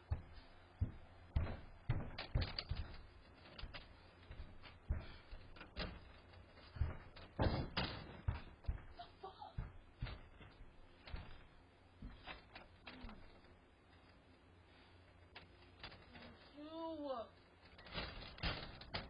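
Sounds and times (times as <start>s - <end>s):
irregular knocks and thumps: 0.0s - 13.5s.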